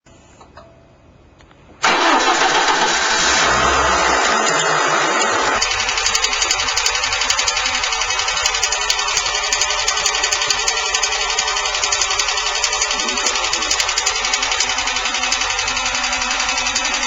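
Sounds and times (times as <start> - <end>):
engine running with valve tapping: 1.8 - 17.0.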